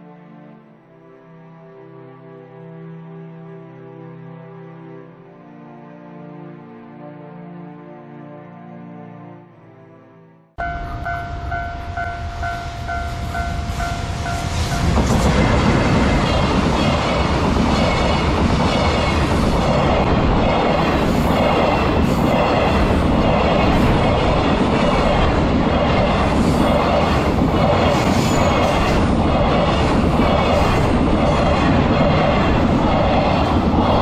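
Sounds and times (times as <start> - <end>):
steady warning tone: 10.6 - 20.8
freight train rumbling past: 10.6 - 34.0
clickety-clack over rail joints: 10.8 - 34.0.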